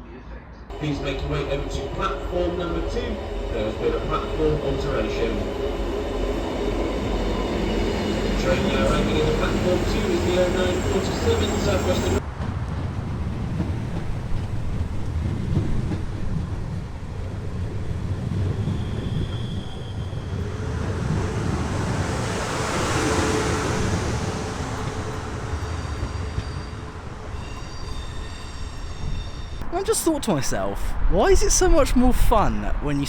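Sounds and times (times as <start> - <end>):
train rumbling into platform: 0.4 - 33.0
wheel or brake squeals: 18.6 - 20.5, 25.4 - 29.6.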